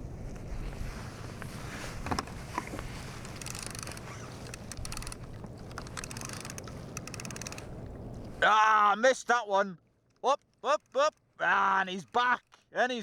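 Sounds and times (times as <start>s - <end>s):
water and wind noise: 0.0s - 12.3s
rapid ticking: 5.8s - 7.7s.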